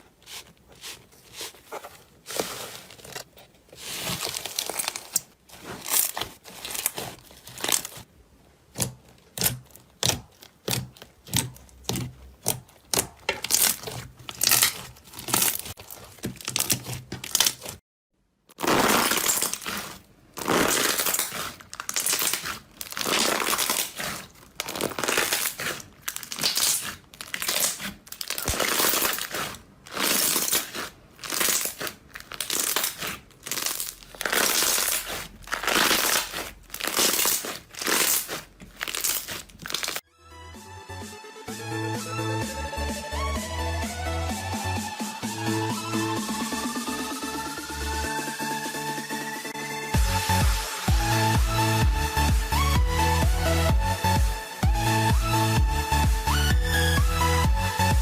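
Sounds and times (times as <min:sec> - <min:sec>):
slime squishing: 0:00.0 - 0:17.8, 0:18.5 - 0:40.1.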